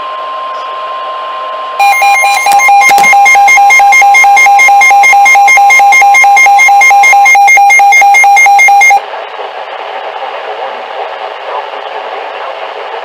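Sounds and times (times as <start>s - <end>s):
steady warning tone: 0.0s - 9.0s
rapid electronic beeping: 1.8s - 9.0s.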